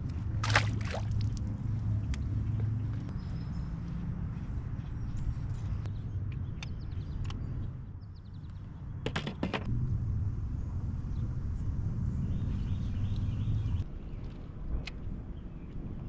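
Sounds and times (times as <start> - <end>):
steady low rumble: 0.0 - 8.9, 9.6 - 16.0.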